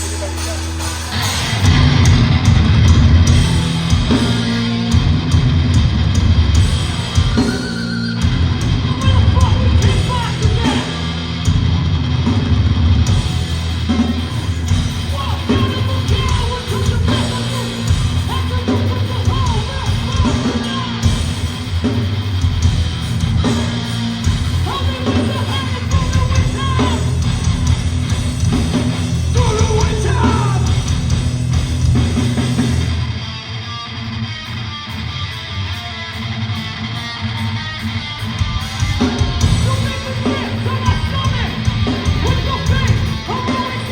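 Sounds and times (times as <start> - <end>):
hardcore band playing live: 0.0 - 43.9
shouted vocals: 7.0 - 11.3, 15.0 - 21.2, 24.6 - 27.4, 29.3 - 30.9, 38.7 - 43.9.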